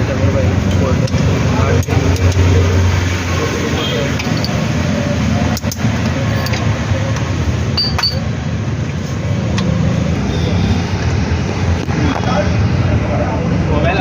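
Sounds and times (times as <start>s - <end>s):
traffic rumble: 0.0s - 14.0s
metallic clinks of hand tools: 7.8s - 8.2s.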